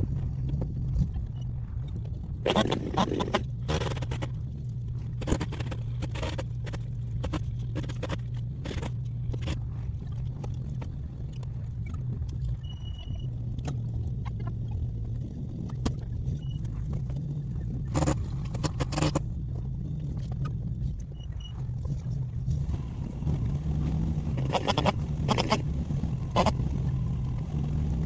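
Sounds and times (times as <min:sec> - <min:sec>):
clicking or crackling: 0:17.8 - 0:19.3
engine idling: 0:21.4 - 0:28.0.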